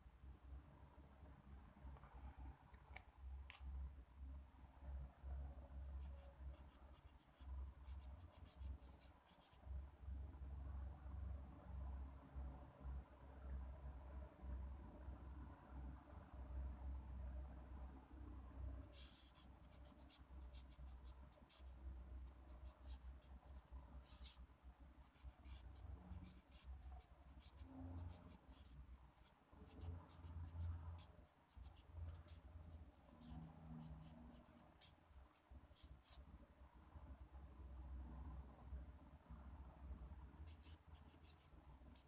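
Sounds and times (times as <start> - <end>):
pen scratching on paper: 5.8 - 9.6, 18.9 - 24.4, 25.0 - 36.2, 40.4 - 42.0.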